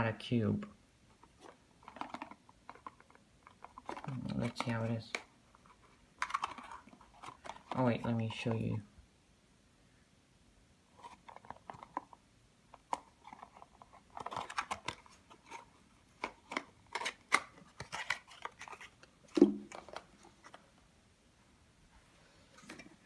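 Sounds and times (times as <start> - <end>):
packaging crinkling and crackling: 1.3 - 8.0, 12.8 - 20.6.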